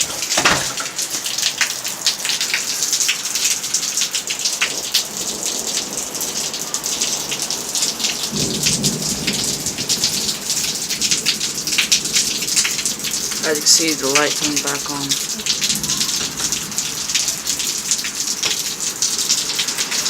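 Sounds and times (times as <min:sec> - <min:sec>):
heavy rain falling: 0:00.0 - 0:20.0
raindrops striking close by: 0:00.0 - 0:20.0
thunder rumble: 0:05.2 - 0:20.0.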